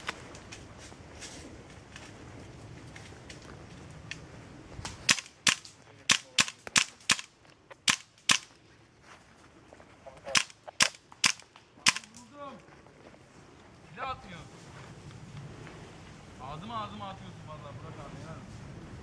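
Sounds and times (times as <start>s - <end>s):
airsoft gun shots: 5.1s - 8.5s, 10.3s - 12.3s.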